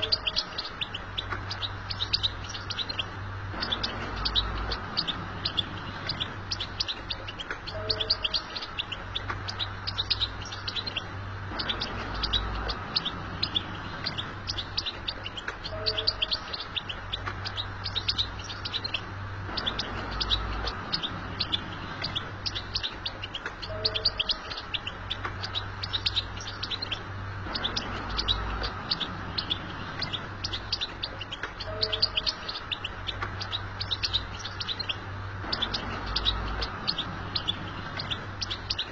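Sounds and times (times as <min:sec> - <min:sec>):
goldfinch twittering: 0:00.0 - 0:38.9
steady low hum: 0:00.0 - 0:38.9.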